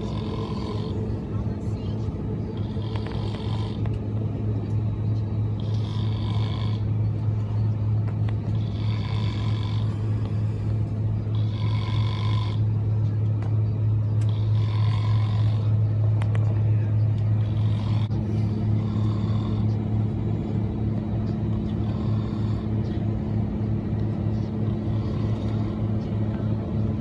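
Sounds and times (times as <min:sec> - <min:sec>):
person snoring: 0:00.0 - 0:01.0, 0:02.6 - 0:03.8, 0:05.6 - 0:06.8, 0:08.5 - 0:10.4, 0:11.3 - 0:12.6, 0:14.3 - 0:15.7, 0:17.4 - 0:18.1, 0:18.8 - 0:19.7, 0:21.8 - 0:22.7
airliner cabin drone: 0:00.0 - 0:27.0.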